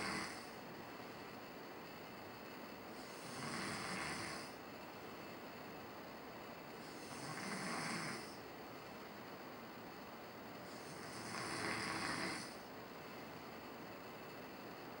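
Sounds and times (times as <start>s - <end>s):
man snoring: 0.0s - 0.5s, 3.0s - 4.6s, 6.8s - 8.4s, 10.7s - 12.6s
steady background hiss: 0.0s - 15.0s.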